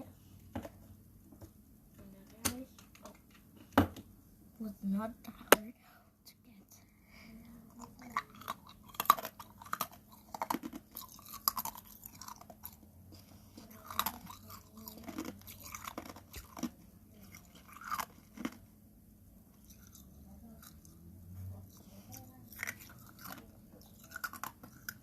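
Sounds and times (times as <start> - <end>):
chewing: 7.7 - 18.7, 19.5 - 25.0
ice crunching between teeth: 8.0 - 12.8, 13.6 - 18.6.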